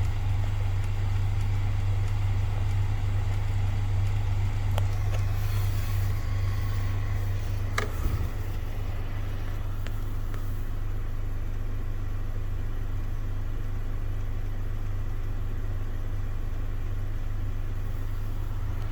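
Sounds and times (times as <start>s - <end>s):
actuator clicks: 0.0s - 10.6s
car engine hum: 0.0s - 18.9s.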